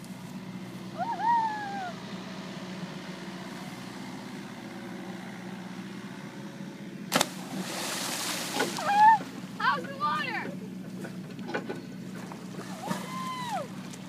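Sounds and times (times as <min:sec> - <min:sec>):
mini excavator engine humming: 0:00.0 - 0:14.0
person shouting: 0:01.0 - 0:02.0, 0:08.8 - 0:09.8.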